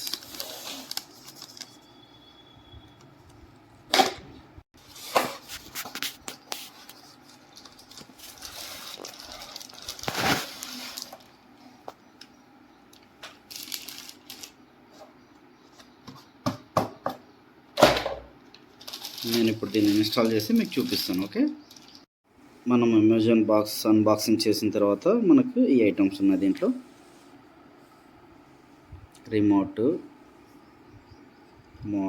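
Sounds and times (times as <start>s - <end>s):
packaging rustling: 0.0s - 2.0s, 4.8s - 11.4s, 13.2s - 14.6s, 18.7s - 22.0s.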